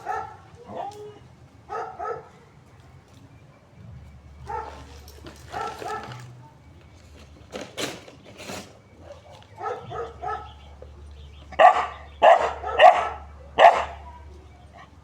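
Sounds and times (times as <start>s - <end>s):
dog barking: 0.0s - 2.4s, 4.4s - 6.3s, 9.1s - 10.7s, 11.5s - 14.1s.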